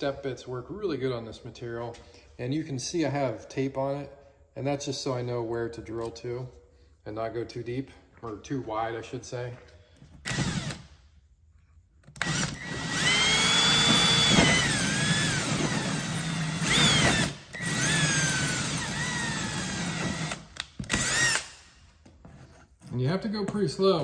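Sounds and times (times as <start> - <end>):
power drill boring through metal: 10.3 - 10.8, 12.2 - 21.6.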